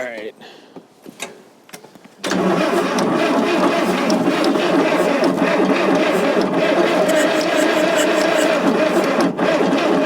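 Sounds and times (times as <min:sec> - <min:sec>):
diesel engine cranking: 0:02.2 - 0:10.0.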